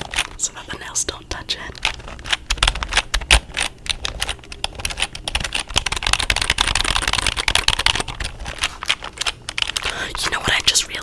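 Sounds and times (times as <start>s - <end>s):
keyboard typing clacks: 1.8s - 10.6s.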